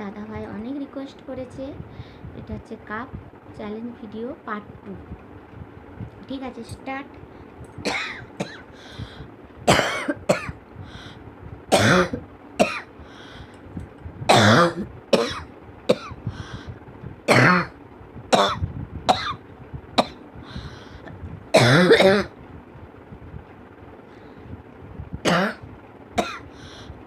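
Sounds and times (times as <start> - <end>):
person coughing: 7.9 - 8.7, 9.7 - 10.6, 11.7 - 12.9, 14.3 - 16.2, 17.3 - 17.7, 18.4 - 19.4, 21.6 - 22.3, 25.3 - 25.6, 26.2 - 26.5.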